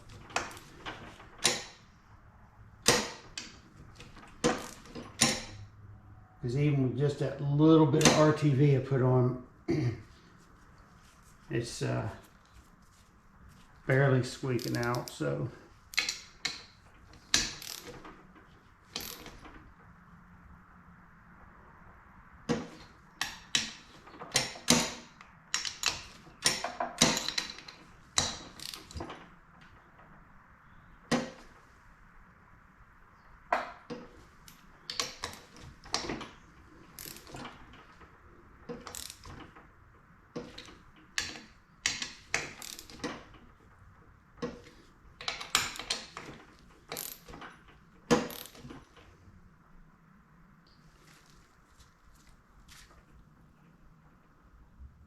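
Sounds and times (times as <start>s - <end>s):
ratchet wrench clicking: 37.0s - 37.3s, 38.9s - 39.2s, 48.2s - 48.6s.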